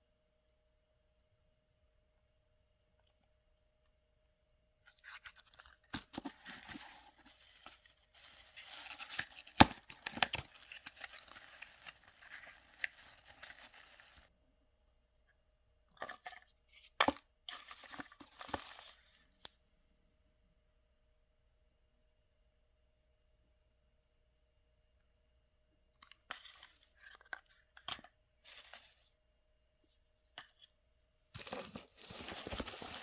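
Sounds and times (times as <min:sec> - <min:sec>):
paper tearing and crinkling: 0:05.0 - 0:14.3.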